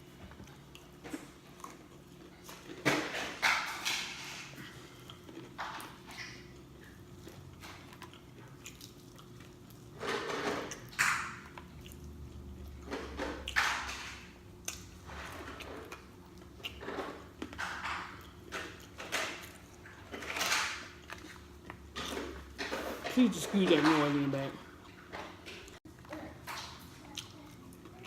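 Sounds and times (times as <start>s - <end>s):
person chewing and lip-smacking: 4.5s - 9.9s, 10.7s - 13.9s, 14.6s - 20.0s, 27.0s - 28.0s.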